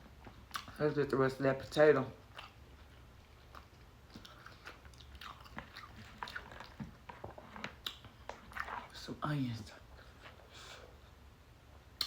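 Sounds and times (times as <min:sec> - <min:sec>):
person chewing food: 0:00.1 - 0:00.8, 0:02.2 - 0:09.0.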